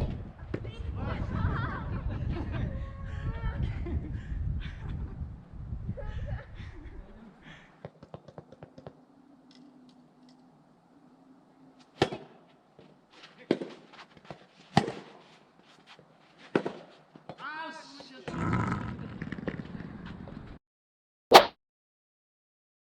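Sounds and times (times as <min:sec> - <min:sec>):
tennis balls struck by rackets: 0:07.8 - 0:09.0, 0:11.8 - 0:15.3, 0:16.4 - 0:17.4.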